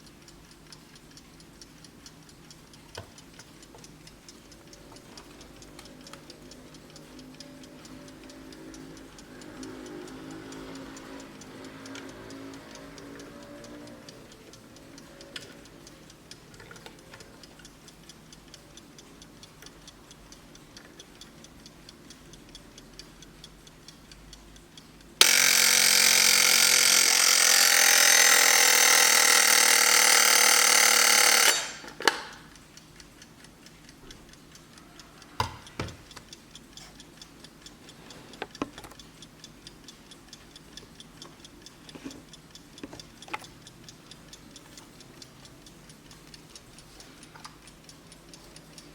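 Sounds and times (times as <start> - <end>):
alarm clock ticking: 0.0 - 48.9
alarm clock ringing: 25.2 - 32.4.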